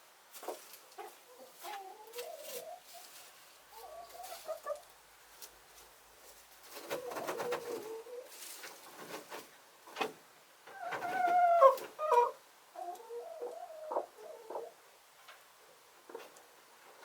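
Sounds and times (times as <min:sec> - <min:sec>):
hens clucking: 0:00.4 - 0:05.0, 0:06.7 - 0:10.1, 0:10.7 - 0:14.8
hens calling softly: 0:00.5 - 0:05.5.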